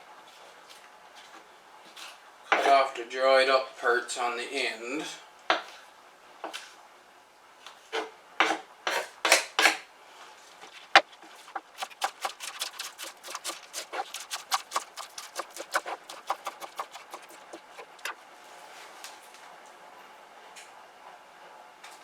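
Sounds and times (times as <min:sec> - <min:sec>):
knife cutting onions: 0:10.8 - 0:18.2.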